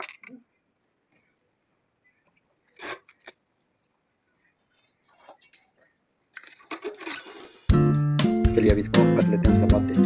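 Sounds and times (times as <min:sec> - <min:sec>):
parts and tools clattering: 0:06.3 - 0:07.7.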